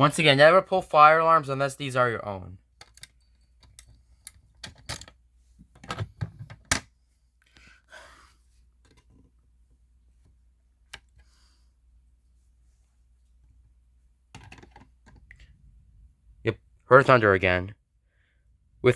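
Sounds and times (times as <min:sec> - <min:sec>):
soft rustle: 0:12.2 - 0:13.7.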